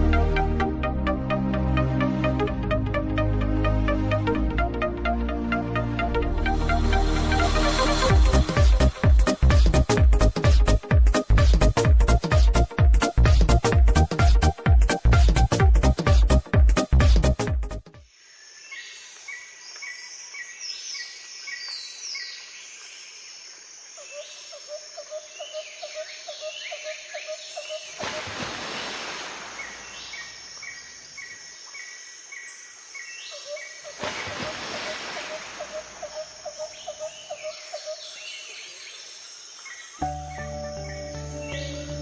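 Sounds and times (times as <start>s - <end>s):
birds singing: 29.5s - 34.0s, 34.7s - 42.0s.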